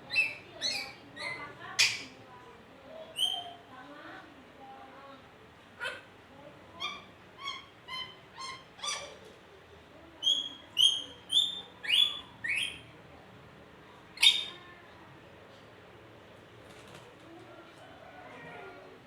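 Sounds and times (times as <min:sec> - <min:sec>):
parrot calling: 0:06.8 - 0:09.2.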